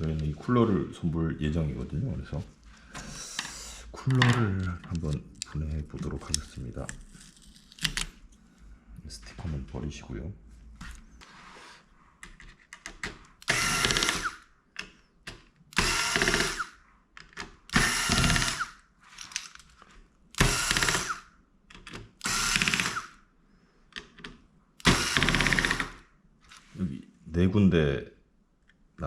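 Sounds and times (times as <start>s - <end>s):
electric screwdriver whirring: 13.4s - 14.4s, 15.7s - 16.8s, 17.7s - 18.8s, 20.4s - 21.2s, 22.2s - 23.2s, 24.8s - 26.0s.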